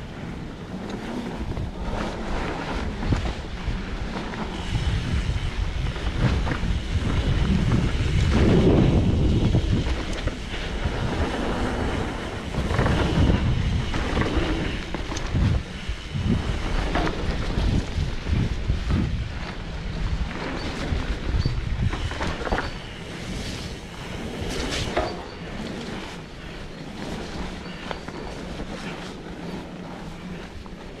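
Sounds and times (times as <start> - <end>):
bike rattling over bumps: 0.0 - 31.0
bike tyre rumble: 0.0 - 31.0
wind buffeting microphone: 0.0 - 31.0.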